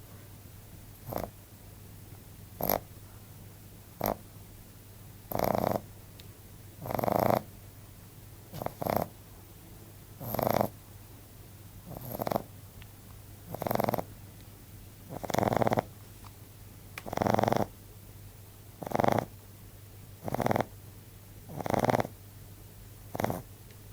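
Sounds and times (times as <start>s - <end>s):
puppy snoring loudly: 1.0s - 1.4s, 2.6s - 2.9s, 4.0s - 4.3s, 5.3s - 5.9s, 6.8s - 7.5s, 8.5s - 9.2s, 10.2s - 10.8s, 11.8s - 12.5s, 13.5s - 14.1s, 15.1s - 15.9s, 17.0s - 17.8s, 18.8s - 19.4s, 20.2s - 20.8s, 21.5s - 22.2s, 23.1s - 23.5s.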